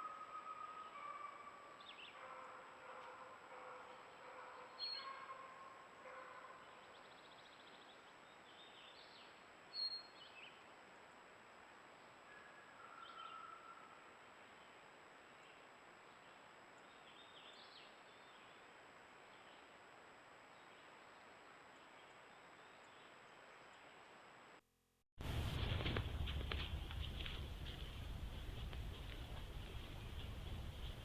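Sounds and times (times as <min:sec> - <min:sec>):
faint bird calls: 0:12.3 - 0:14.1.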